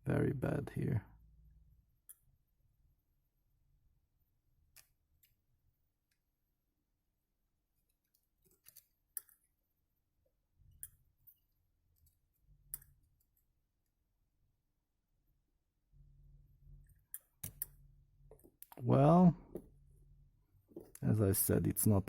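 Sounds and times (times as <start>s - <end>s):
small tools clicking and tapping: 7.9s - 9.5s, 16.9s - 18.8s.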